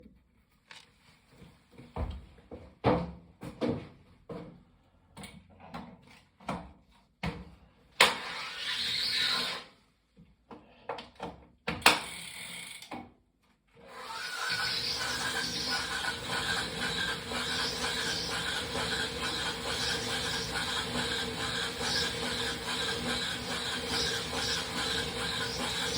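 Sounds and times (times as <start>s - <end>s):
bike roller trainer spinning: 15.0s - 25.9s.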